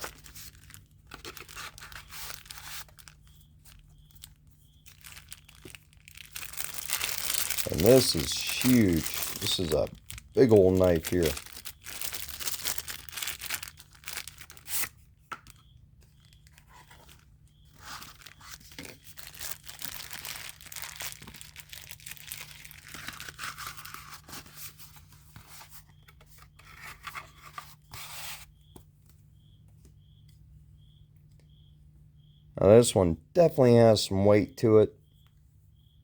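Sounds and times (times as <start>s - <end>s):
packaging crinkling and tearing: 0.0s - 15.6s, 16.2s - 24.9s.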